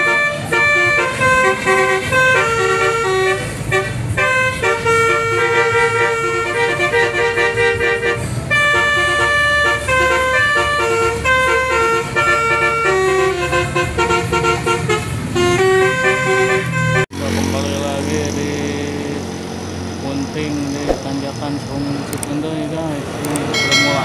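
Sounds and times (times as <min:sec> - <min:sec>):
melodic bus horn tune: 0:00.0 - 0:17.3
low bus engine: 0:00.0 - 0:24.0.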